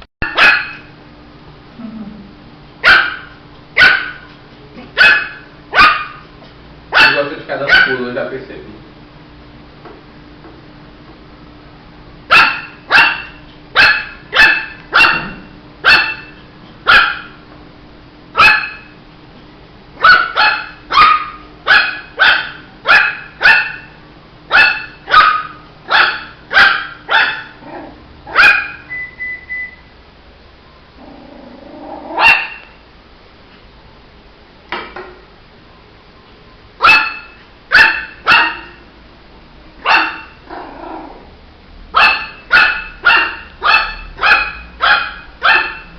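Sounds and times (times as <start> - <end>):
puppy barking: 0.2 - 0.9, 2.8 - 4.3, 4.9 - 6.3, 6.9 - 8.0, 12.3 - 17.4, 18.4 - 19.0, 20.0 - 28.9, 32.1 - 32.8, 36.8 - 38.9, 39.8 - 40.5, 42.0 - 45.9.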